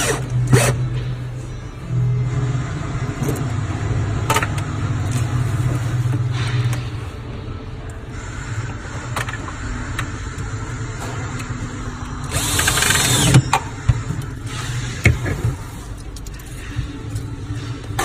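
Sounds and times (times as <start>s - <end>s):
power drill running: 12.3s - 13.4s.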